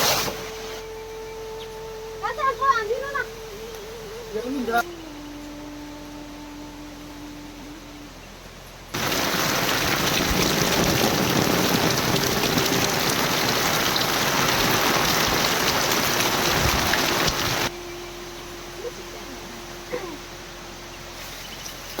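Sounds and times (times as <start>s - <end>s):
heavy rain pouring: 8.8s - 22.0s.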